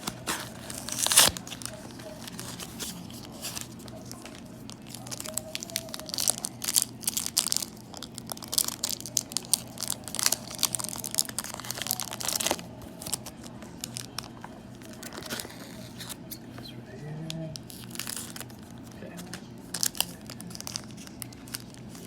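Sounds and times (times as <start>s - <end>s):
foil wrapper crinkling and tearing: 0.0s - 16.3s, 17.3s - 22.0s.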